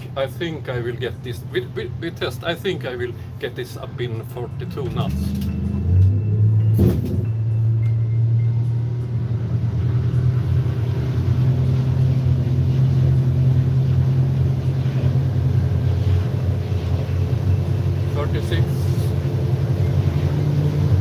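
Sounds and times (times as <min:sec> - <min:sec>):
motorboat engine running hard: 0:08.0 - 0:21.0.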